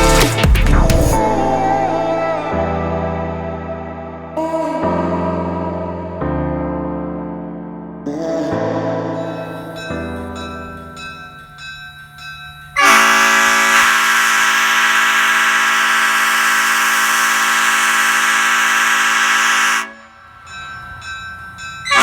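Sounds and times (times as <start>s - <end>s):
loud air horn chord: 12.8s - 20.4s.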